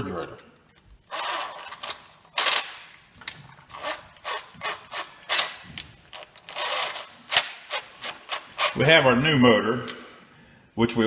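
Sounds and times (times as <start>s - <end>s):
faint high whine: 0.0s - 9.2s
tools clicking and rattling: 1.1s - 8.8s.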